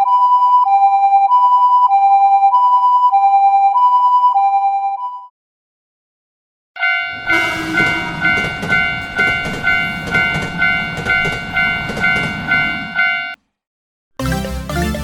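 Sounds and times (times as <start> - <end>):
railroad crossing bell ringing: 6.8 - 13.4
passing train rumble: 6.9 - 13.4.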